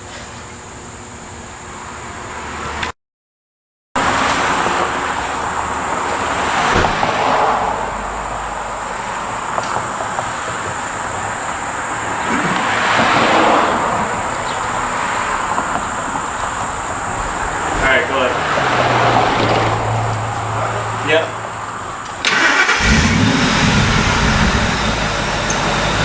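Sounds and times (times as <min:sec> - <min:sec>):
car engine running: 0:20.0 - 0:26.0.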